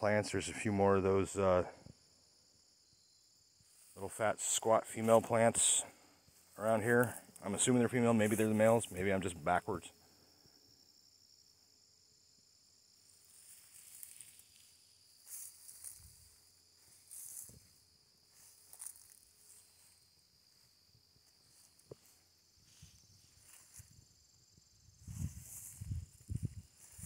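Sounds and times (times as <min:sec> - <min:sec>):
insects trilling: 0:00.0 - 0:27.0
footsteps through dry vegetation: 0:13.2 - 0:27.0.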